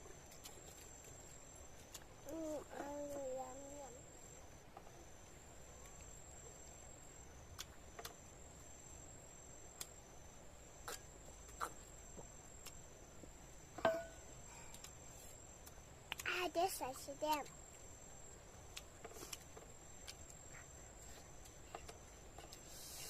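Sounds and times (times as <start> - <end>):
crickets chirring: 0.0 - 23.0
soft eating clicks: 15.6 - 16.4.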